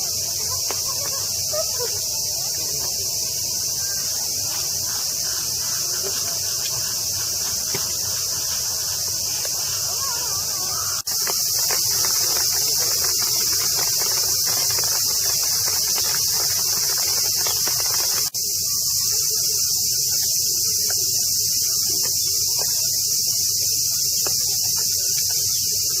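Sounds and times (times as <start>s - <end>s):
cicadas droning: 0.0s - 26.0s.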